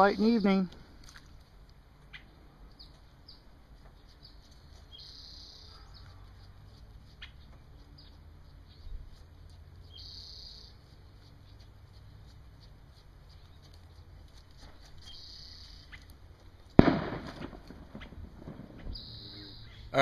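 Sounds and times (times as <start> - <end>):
songbirds calling: 0.0 - 20.0
low steady rumble: 0.7 - 20.0
buzzy high bird trill: 4.0 - 6.5, 9.8 - 10.8, 18.8 - 20.0.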